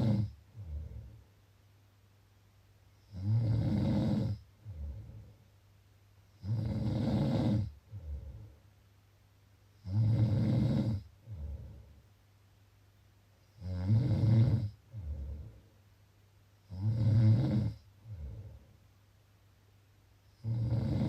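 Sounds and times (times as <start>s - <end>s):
person snoring: 0.0s - 1.2s, 3.0s - 5.3s, 6.4s - 8.5s, 9.8s - 11.9s, 13.6s - 15.6s, 16.7s - 18.7s, 20.3s - 21.0s
soft breaths: 0.0s - 1.6s, 2.8s - 9.0s, 9.7s - 12.2s, 14.6s - 16.8s, 17.5s - 19.3s.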